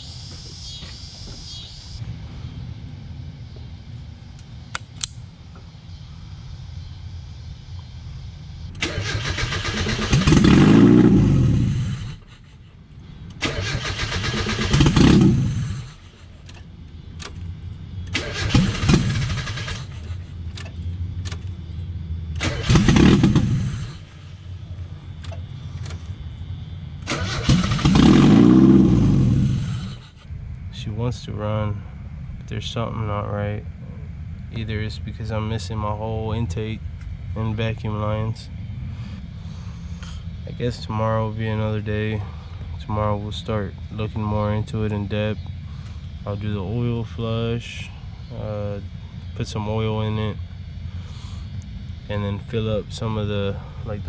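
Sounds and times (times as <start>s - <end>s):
car engine cranking on starter: 8.7s - 12.6s, 13.3s - 21.6s, 22.3s - 24.4s, 27.0s - 30.2s.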